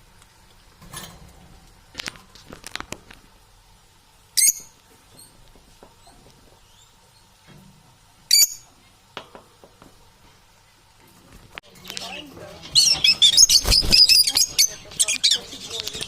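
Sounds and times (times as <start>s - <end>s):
parrot calling: 12.0s - 16.0s.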